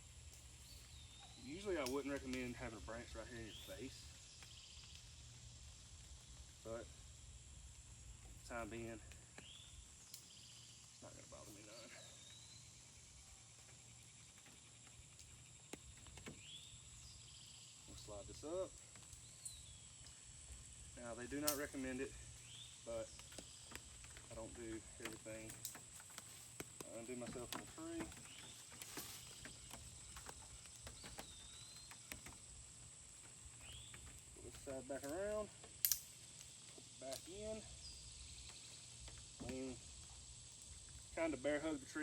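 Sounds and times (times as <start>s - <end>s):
insect drone: 0.0s - 42.0s
rope handling clicks and rustles: 23.1s - 37.5s
light clicks of gear: 33.2s - 39.7s.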